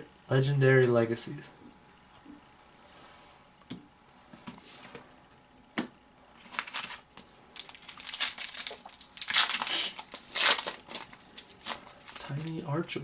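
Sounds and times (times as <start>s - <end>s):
foil wrapper crinkling: 6.4s - 13.0s.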